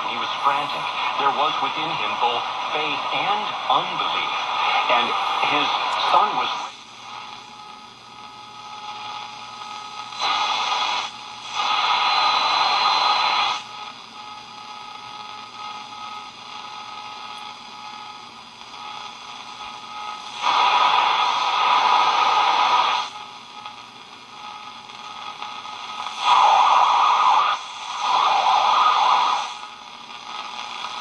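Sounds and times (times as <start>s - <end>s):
bursts of radio noise: 0.0s - 6.7s
radio static and hiss: 0.0s - 31.0s.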